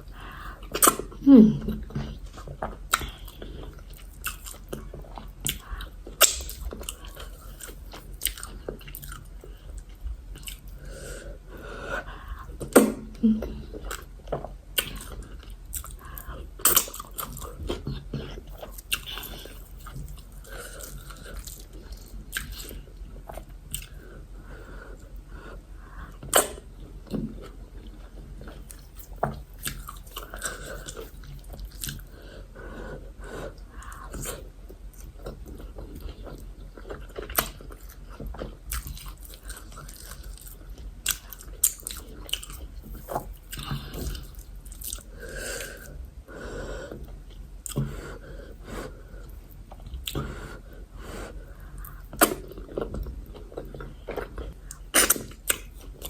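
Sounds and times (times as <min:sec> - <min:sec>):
chewing and mouth noises: 0:00.1 - 0:10.8, 0:13.5 - 0:24.0, 0:25.9 - 0:32.2, 0:33.5 - 0:45.9, 0:51.2 - 0:56.0.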